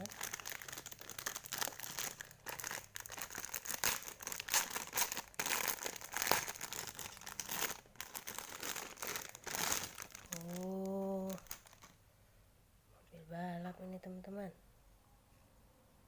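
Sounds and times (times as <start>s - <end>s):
packaging crinkling and tearing: 0.0s - 12.0s.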